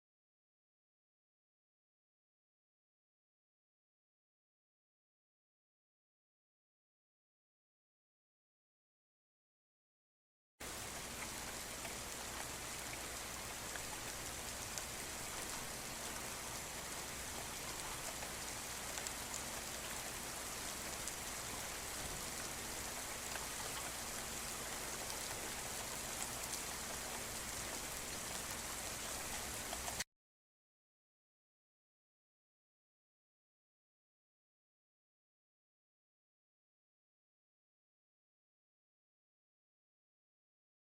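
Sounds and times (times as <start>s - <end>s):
steady rain falling: 10.6s - 30.0s.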